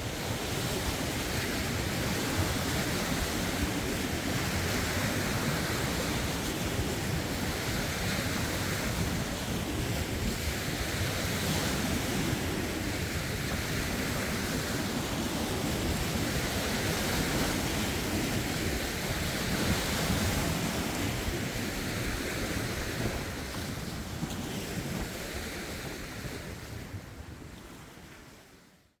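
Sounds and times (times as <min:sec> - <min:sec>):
waves washing over rocks: 0:00.0 - 0:27.6
wind buffeting microphone: 0:00.0 - 0:28.4.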